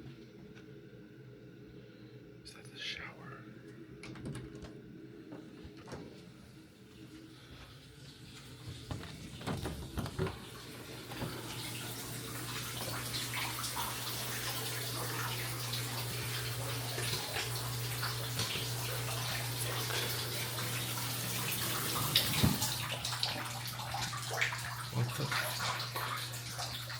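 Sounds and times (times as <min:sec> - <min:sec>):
shower water hissing: 0:06.5 - 0:26.9
knocks: 0:08.7 - 0:10.5.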